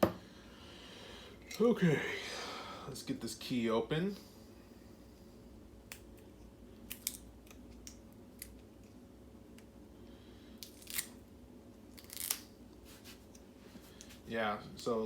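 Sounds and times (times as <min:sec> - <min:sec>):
wrapping being snipped and peeled: 0:06.9 - 0:08.6, 0:10.6 - 0:11.2, 0:11.9 - 0:13.3.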